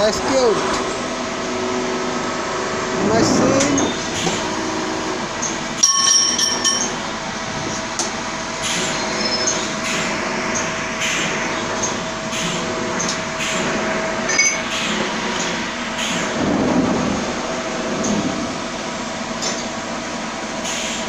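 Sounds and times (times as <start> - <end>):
machinery humming: 0.0 - 21.0
metallic clinks and ringing: 5.8 - 7.0.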